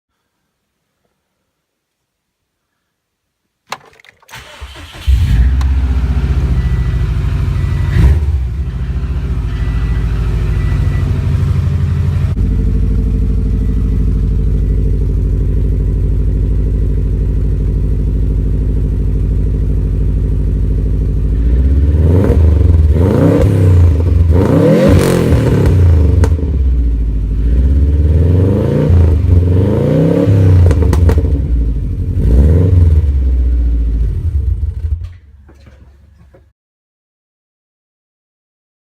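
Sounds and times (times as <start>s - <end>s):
car engine starting and idling: 3.7s - 36.4s
engine revving: 4.3s - 16.1s, 20.6s - 35.0s.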